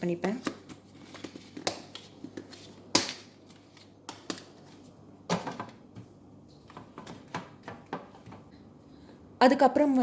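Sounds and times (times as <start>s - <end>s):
plastic containers clicking and knocking: 6.7s - 8.5s.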